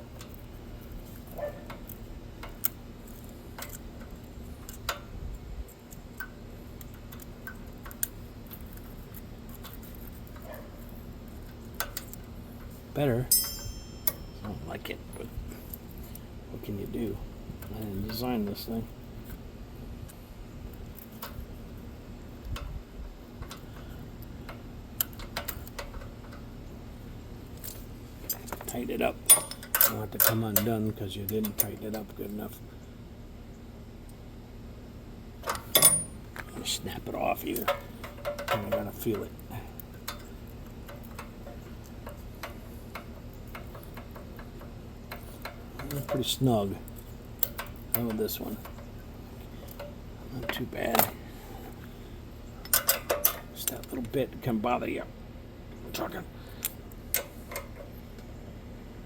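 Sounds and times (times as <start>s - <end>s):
faint steady hum: 0.0s - 59.0s
hand tools clicking on metal: 13.3s - 16.2s, 27.6s - 32.1s, 35.4s - 36.5s, 37.4s - 48.9s, 52.6s - 54.1s.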